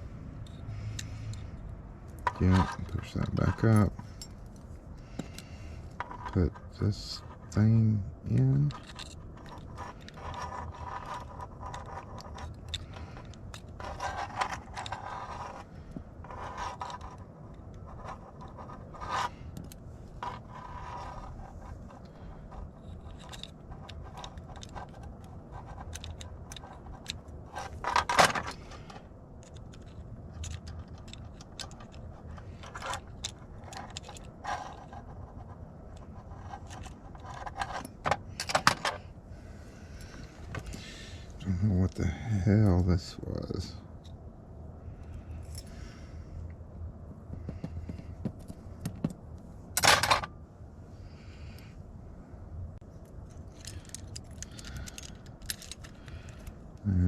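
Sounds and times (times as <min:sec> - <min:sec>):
metal parts clicking and scraping: 0:00.0 - 0:39.2, 0:48.3 - 0:50.4, 0:53.0 - 0:56.8
metal parts clatter: 0:08.3 - 0:17.2, 0:17.9 - 0:35.2, 0:35.9 - 0:39.1, 0:49.8 - 0:50.3, 0:53.2 - 0:56.5.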